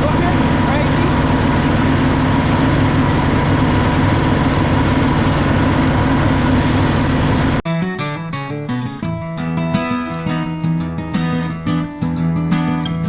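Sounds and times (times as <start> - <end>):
tractor engine with rotary mower: 0.0 - 7.6.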